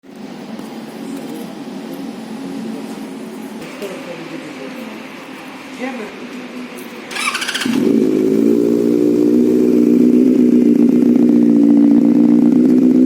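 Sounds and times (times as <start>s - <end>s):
starter motor whir: 7.1s - 9.9s
motorcycle engine idling: 7.1s - 13.0s.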